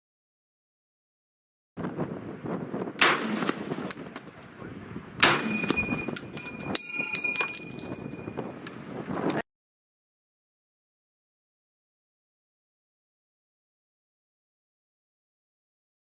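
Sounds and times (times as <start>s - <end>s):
metallic pings and ringing: 5.3s - 8.4s.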